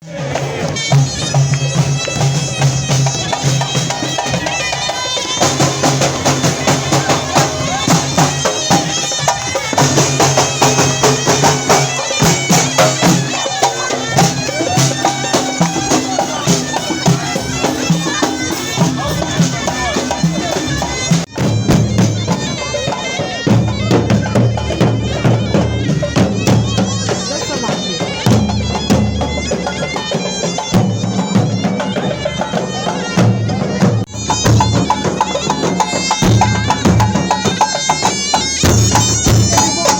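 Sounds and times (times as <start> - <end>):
reedy wind instrument melody: 0.1 - 39.9
fast dense drumming: 2.9 - 22.3, 33.2 - 39.9.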